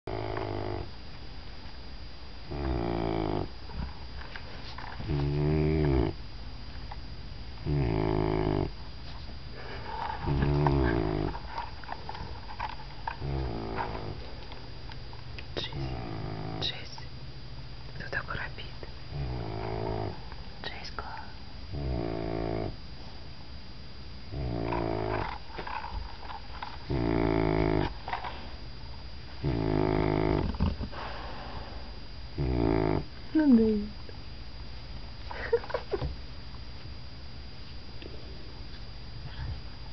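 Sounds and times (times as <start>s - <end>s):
puppy snoring: 0.0s - 1.0s, 2.4s - 6.2s, 7.6s - 14.6s, 15.5s - 17.1s, 18.0s - 22.8s, 24.2s - 28.6s, 29.4s - 33.9s.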